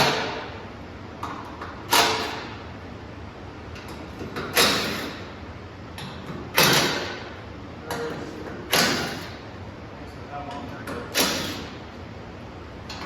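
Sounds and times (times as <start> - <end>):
hammer striking steel stamp: 6.0 - 7.2.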